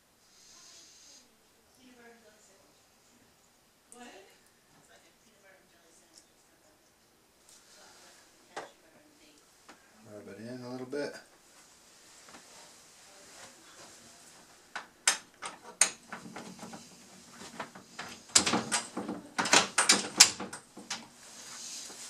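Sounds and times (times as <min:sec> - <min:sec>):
metallic clicks and knocks: 0:14.8 - 0:16.8, 0:17.6 - 0:21.1.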